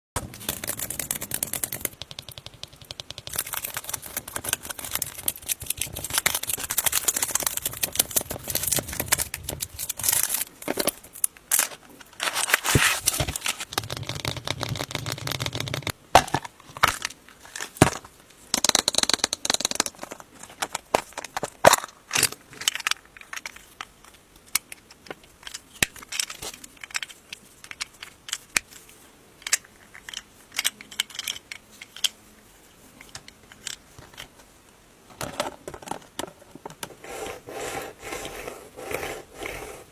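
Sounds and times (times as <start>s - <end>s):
sharp clicks and snaps: 0.2s - 10.0s
foil wrapper crinkling and tearing: 3.3s - 10.6s, 11.5s - 13.7s.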